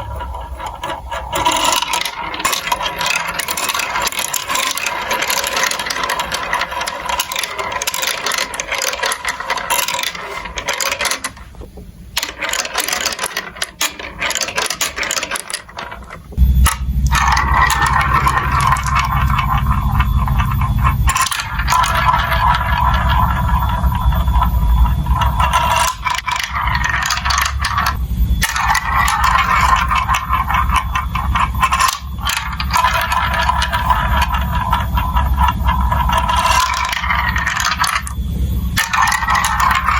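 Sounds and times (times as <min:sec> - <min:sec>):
marbles clattering through marble run: 0:00.0 - 0:39.9
low rumble: 0:16.3 - 0:21.3.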